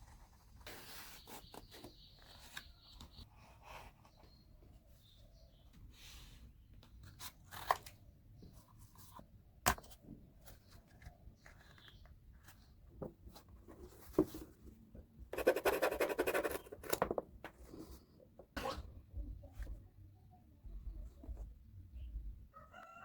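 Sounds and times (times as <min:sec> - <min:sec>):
clicks and scrapes on cardboard: 0:15.3 - 0:17.1
rasping cutting of cardboard: 0:15.4 - 0:17.0.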